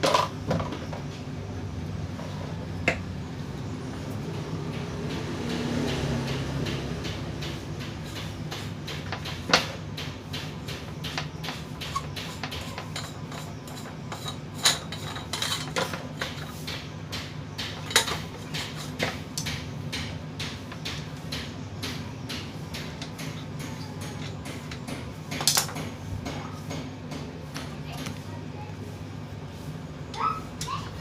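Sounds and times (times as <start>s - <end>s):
metal parts and tools clinking: 12.5s - 16.0s.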